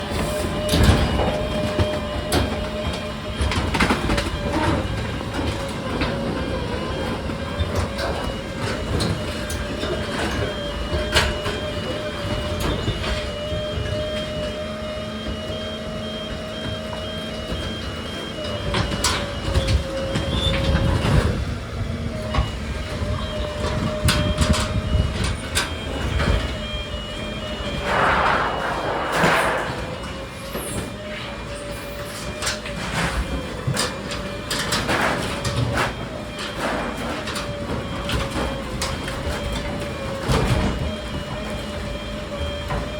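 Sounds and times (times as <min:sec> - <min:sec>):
rumbling surges: 0:27.7 - 0:31.0.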